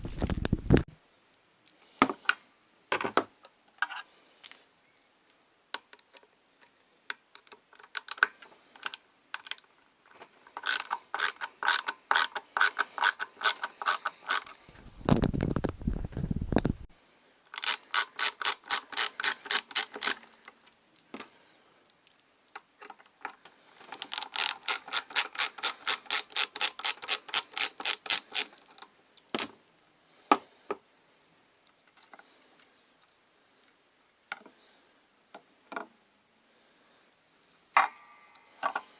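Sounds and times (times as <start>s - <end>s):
ratchet clicking: 10.6s - 14.5s, 17.6s - 20.2s, 23.9s - 28.6s.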